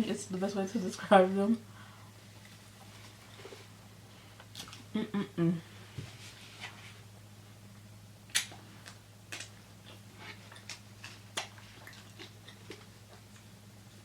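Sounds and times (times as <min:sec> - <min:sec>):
low electrical hum: 0:00.0 - 0:14.0
chewing and mouth clicks: 0:08.3 - 0:13.5.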